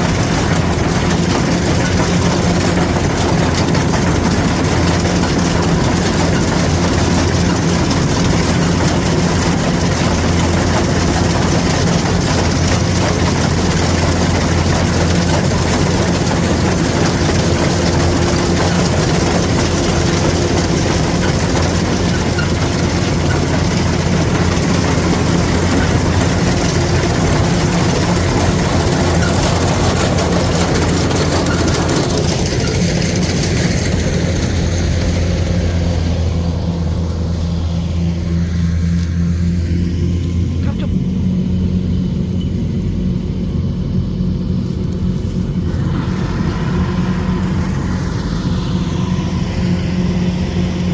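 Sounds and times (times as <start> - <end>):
dense mechanical clatter: 0.0 - 38.7
combine harvester diesel engine: 0.0 - 50.9.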